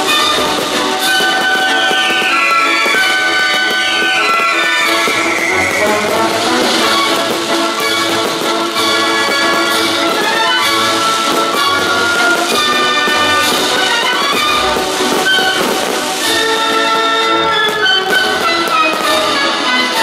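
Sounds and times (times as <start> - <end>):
orchestral music with brass: 0.0 - 20.0.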